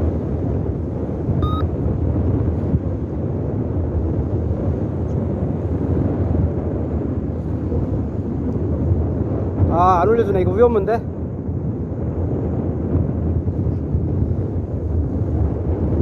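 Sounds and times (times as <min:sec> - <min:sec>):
wind buffeting microphone: 0:00.0 - 0:16.0
short beep: 0:01.4 - 0:01.7.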